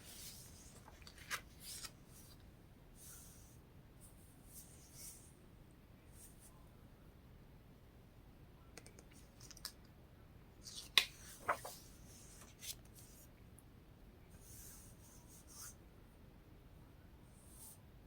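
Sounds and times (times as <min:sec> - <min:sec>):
soft rustles: 0:11.3 - 0:13.2.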